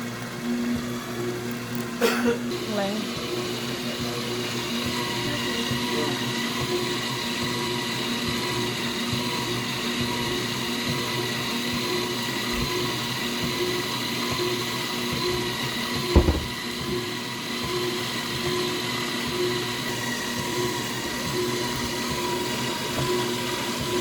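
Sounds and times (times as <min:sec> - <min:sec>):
multi-cooker motor hum with whine: 0:00.0 - 0:24.0
short knock: 0:16.1 - 0:16.6.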